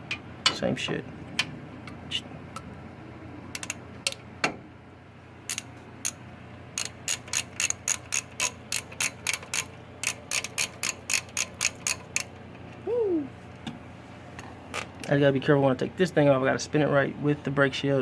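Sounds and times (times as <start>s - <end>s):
socket ratchet clicking: 5.5s - 6.2s, 6.8s - 12.3s.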